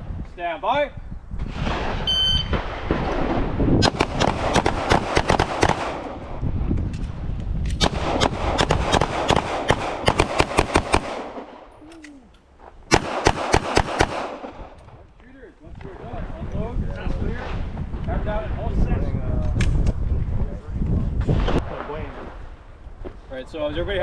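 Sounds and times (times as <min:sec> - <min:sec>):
handgun shots: 0:03.8 - 0:06.0, 0:07.7 - 0:11.4, 0:12.9 - 0:14.5.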